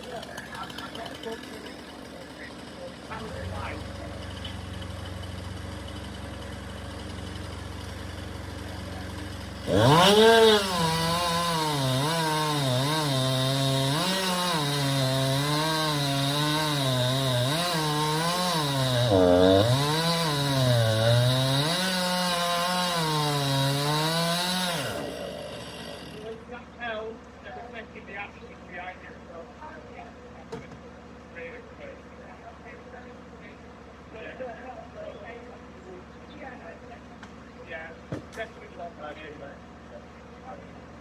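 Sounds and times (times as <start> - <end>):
chainsaw cutting wood: 0.0 - 26.4.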